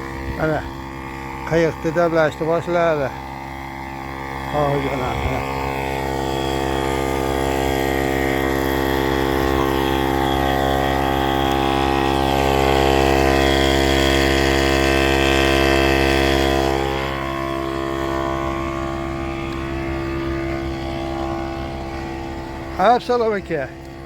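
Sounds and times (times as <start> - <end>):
electric air pump humming: 0.0 - 24.0.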